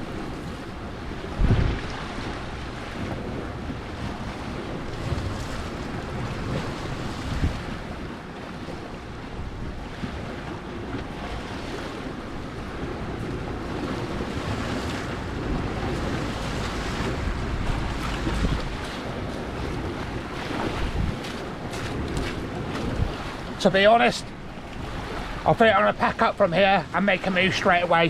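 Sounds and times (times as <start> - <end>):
storm wind buffeting microphone: 0.0 - 28.0
low thumps: 13.2 - 21.2.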